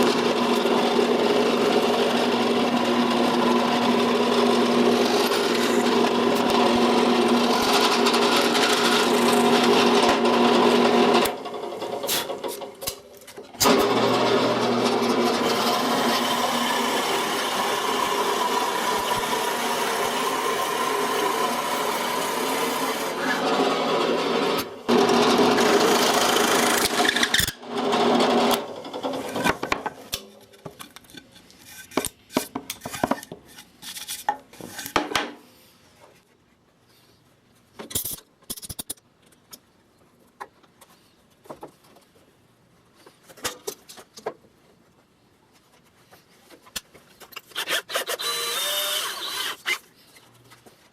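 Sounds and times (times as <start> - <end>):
electric drill boring into wood: 0.0 - 11.4, 13.6 - 28.6, 47.6 - 49.8.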